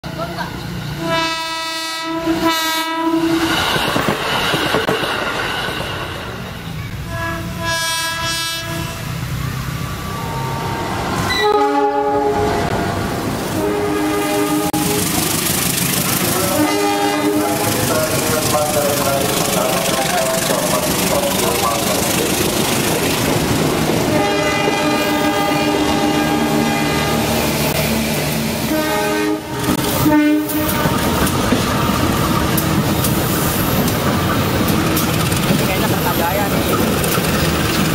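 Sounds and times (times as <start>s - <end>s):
train rumbling: 0.0s - 37.9s
train horn blasts: 0.9s - 3.6s, 6.9s - 9.3s, 10.5s - 15.2s, 16.3s - 18.2s, 24.1s - 27.5s, 28.7s - 31.2s.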